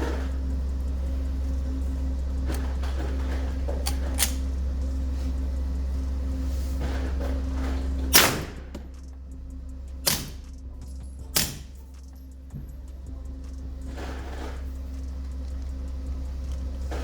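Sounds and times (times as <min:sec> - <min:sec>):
suppressed gunshots: 0:08.1 - 0:09.1, 0:11.3 - 0:11.8.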